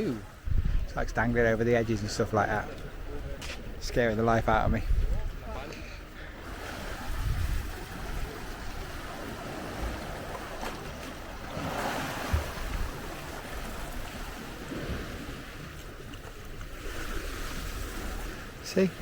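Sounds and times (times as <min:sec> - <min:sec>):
wind rumbling on microphone: 0:00.0 - 0:18.6
sea washing against rocks: 0:06.4 - 0:19.0.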